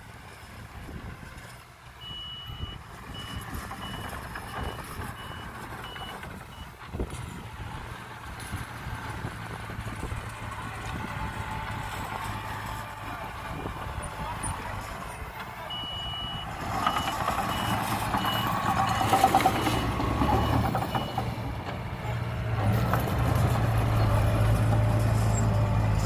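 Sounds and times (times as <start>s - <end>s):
diesel engine running: 0.0s - 26.0s
reversing alarm beeping: 2.0s - 6.7s, 15.6s - 21.3s.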